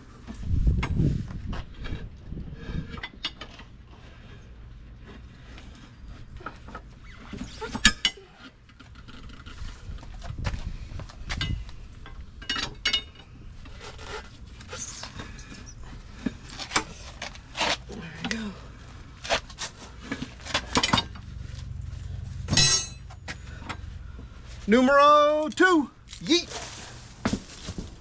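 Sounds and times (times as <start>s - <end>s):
tire changer knocks and clanks: 19.2s - 24.5s, 26.6s - 28.0s.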